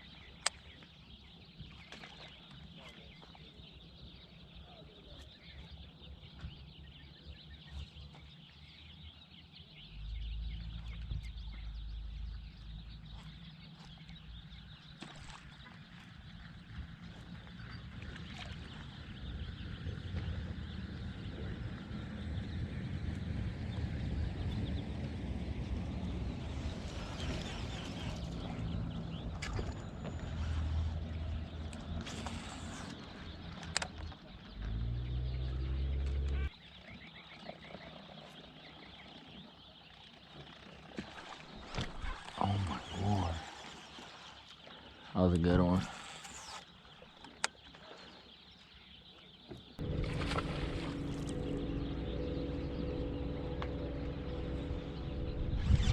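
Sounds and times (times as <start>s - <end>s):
birds calling: 0.0s - 55.9s
low rumble: 9.9s - 14.8s, 49.8s - 55.9s.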